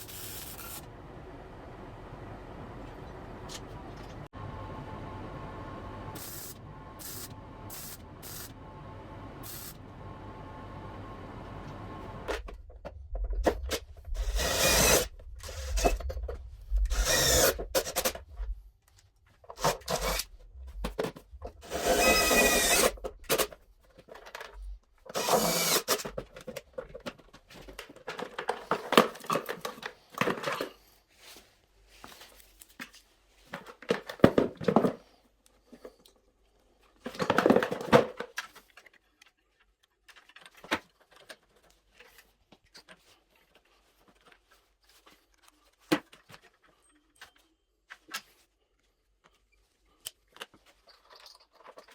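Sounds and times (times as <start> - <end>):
low steady hum: 0.0 - 23.5
power tool whining: 4.0 - 12.6, 14.2 - 16.1, 16.8 - 18.1, 21.6 - 23.0.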